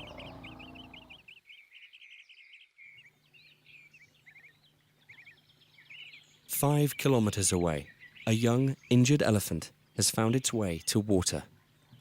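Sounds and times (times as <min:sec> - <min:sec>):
low animal-like rumble: 0:00.0 - 0:01.2
wild birds chirping: 0:00.0 - 0:12.0.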